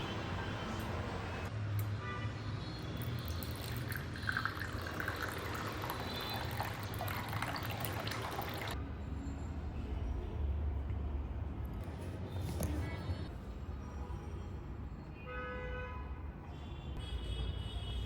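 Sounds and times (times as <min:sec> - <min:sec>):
water drips: 0:03.0 - 0:08.8
water running and splashing: 0:03.4 - 0:08.8.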